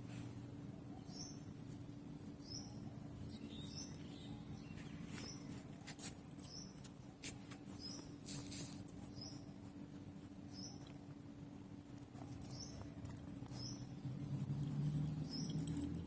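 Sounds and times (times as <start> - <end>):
bird chirping: 0.9 - 5.6, 10.5 - 10.9, 12.4 - 14.0, 15.0 - 16.0.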